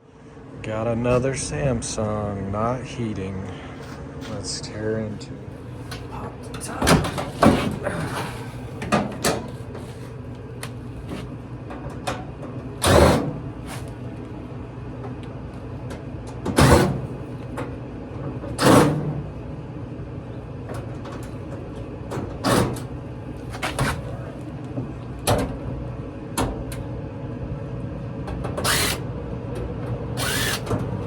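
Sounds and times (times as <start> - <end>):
low steady hum: 0.0 - 16.4.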